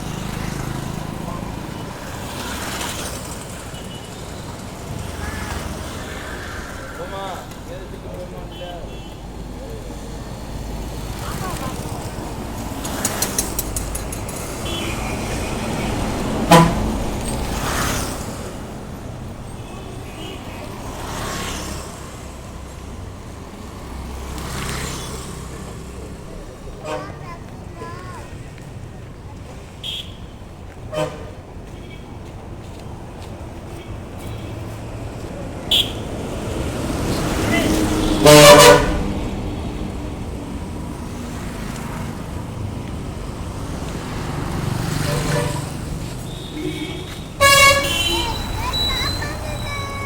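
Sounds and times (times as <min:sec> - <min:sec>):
traffic and engine rumble: 0:00.0 - 0:50.0
vehicles passing: 0:00.0 - 0:50.0
vehicle horn blast: 0:14.6 - 0:17.0, 0:30.9 - 0:31.3, 0:35.7 - 0:36.0, 0:37.5 - 0:39.1, 0:46.3 - 0:48.9.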